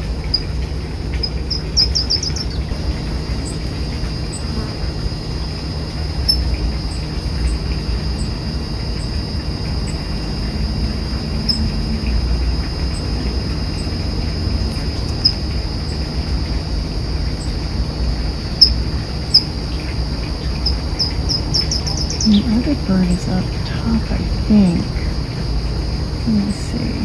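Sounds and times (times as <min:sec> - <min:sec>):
insect trill: 0:00.0 - 0:27.0
low background rumble: 0:00.0 - 0:27.0
bird chirping: 0:01.2 - 0:02.7, 0:18.6 - 0:23.6.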